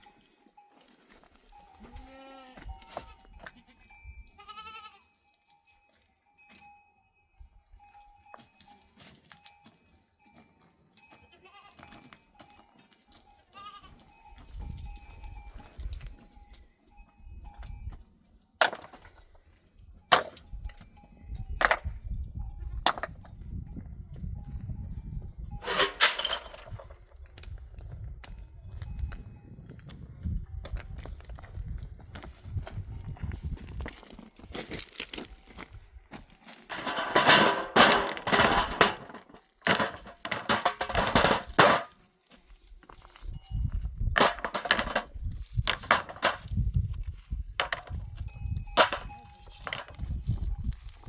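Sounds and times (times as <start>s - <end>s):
faint bell ringing: 0.0s - 18.2s, 47.0s - 49.7s
goats bleating: 1.8s - 3.8s, 4.4s - 5.1s, 11.3s - 11.8s, 13.6s - 14.0s.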